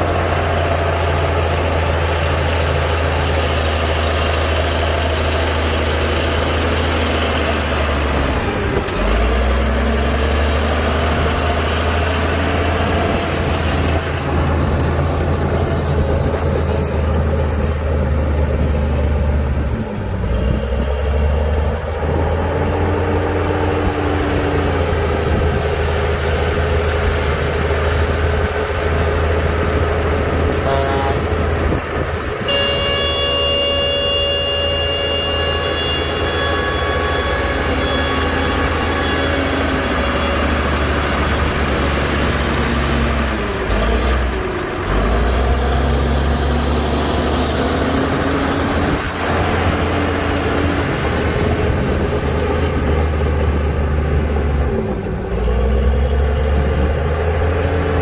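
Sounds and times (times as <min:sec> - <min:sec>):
heavy diesel engine droning: 0:00.0 - 0:58.0
steady high tone: 0:32.4 - 0:41.3.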